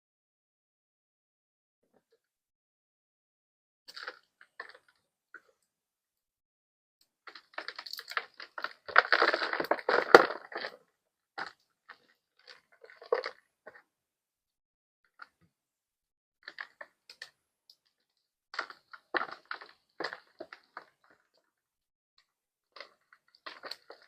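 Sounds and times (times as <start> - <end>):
dry crunchy crushing: 7.3 - 13.8, 18.6 - 21.6, 22.7 - 24.0.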